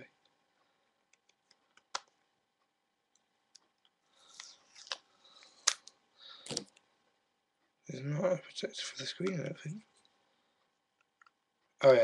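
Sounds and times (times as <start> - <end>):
plastic film peeling: 4.3 - 6.8.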